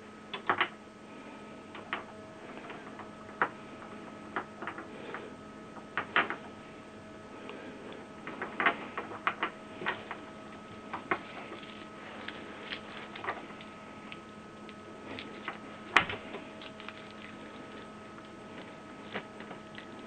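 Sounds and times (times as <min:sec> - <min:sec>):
faint steady hum: 0:00.0 - 0:20.0.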